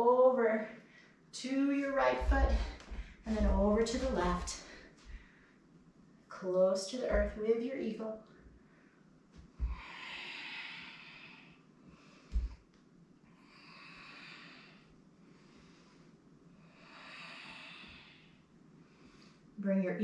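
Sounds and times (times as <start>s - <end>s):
person breathing: 4.5s - 5.6s, 13.4s - 19.5s
soft thumps: 7.1s - 7.4s.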